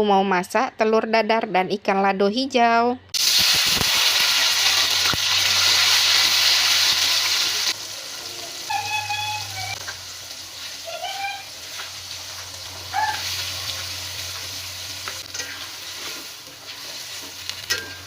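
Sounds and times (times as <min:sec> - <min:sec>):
cooking hiss: 0:03.2 - 0:18.0.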